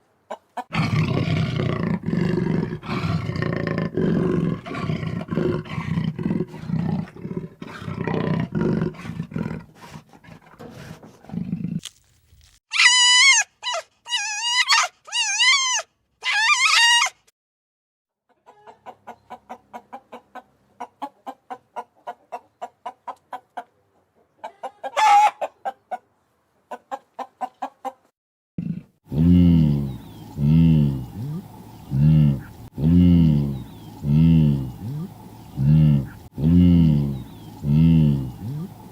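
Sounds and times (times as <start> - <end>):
hen clucking: 0.3 - 0.7, 18.3 - 28.1, 29.8 - 38.9
animal grunting: 0.7 - 11.8, 28.6 - 38.9.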